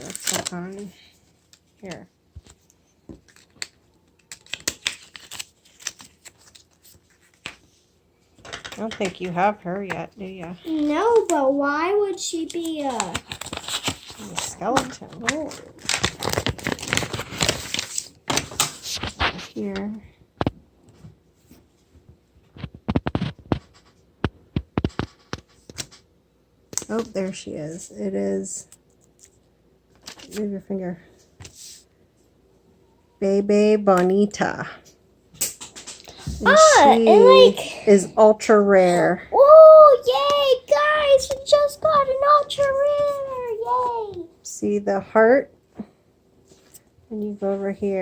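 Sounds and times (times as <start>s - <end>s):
toy packaging crinkling: 0.0s - 1.8s, 3.2s - 7.4s, 12.3s - 18.5s, 36.5s - 37.5s, 40.1s - 44.2s.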